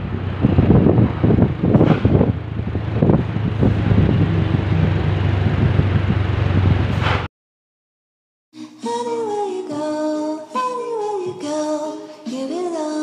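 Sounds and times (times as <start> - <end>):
steady low hum: 0.0 - 7.1
bus engine running: 0.0 - 7.3
wind buffeting microphone: 0.0 - 7.3.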